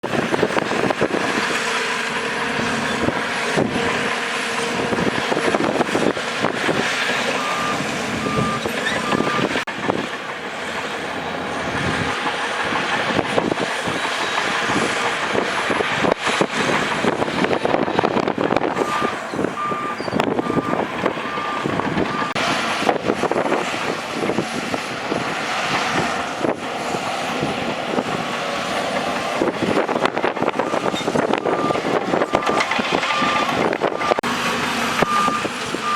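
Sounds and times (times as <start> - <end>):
diesel engine under load: 0.0 - 35.9
reversing alarm beeps: 7.4 - 9.6, 18.8 - 22.4, 30.6 - 34.3, 35.0 - 35.9
clatter of tracks and rock: 8.0 - 24.1, 27.2 - 35.9.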